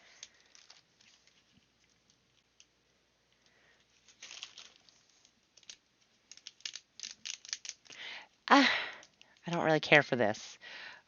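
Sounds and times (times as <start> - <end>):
rustling: 0.0 - 2.7, 3.3 - 8.1
plastic toy pieces clicking: 5.5 - 8.0.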